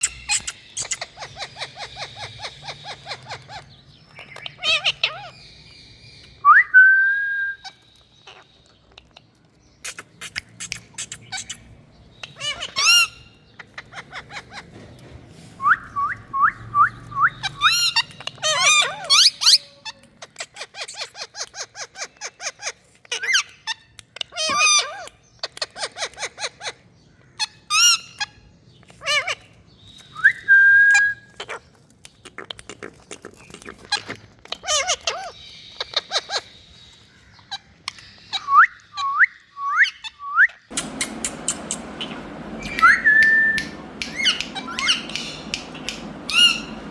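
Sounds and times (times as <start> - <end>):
parakeet calling: 0.0 - 5.7, 7.6 - 15.0, 15.8 - 26.8, 33.4 - 39.2, 39.8 - 46.9.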